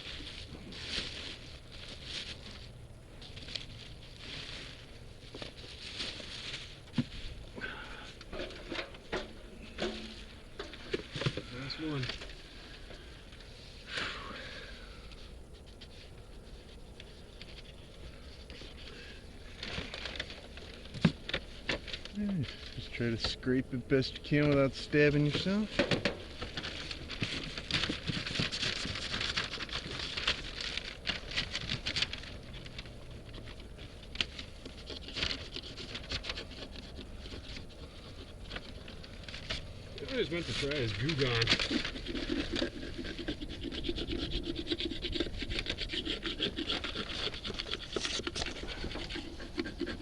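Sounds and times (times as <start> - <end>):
hand tool scraping wax: 4.2 - 13.0, 33.3 - 50.0
quick scraping strokes: 40.0 - 50.0.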